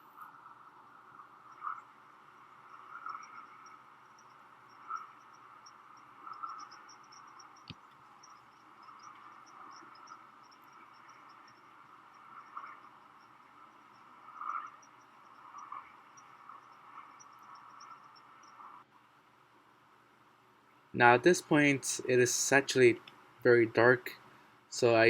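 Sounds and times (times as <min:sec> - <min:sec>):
crickets chirping: 0:00.0 - 0:18.9.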